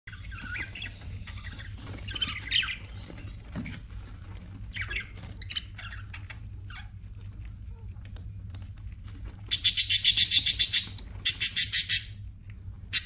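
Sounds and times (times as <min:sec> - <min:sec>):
budgerigars chirping: 0:00.1 - 0:03.2, 0:04.7 - 0:06.8, 0:09.5 - 0:12.2.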